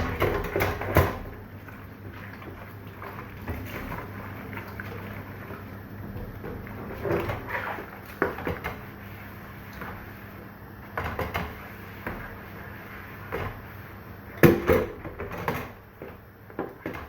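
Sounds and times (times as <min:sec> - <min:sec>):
dishes clattering while washed: 0:00.0 - 0:09.0, 0:10.9 - 0:12.4, 0:13.3 - 0:13.6, 0:14.3 - 0:17.0.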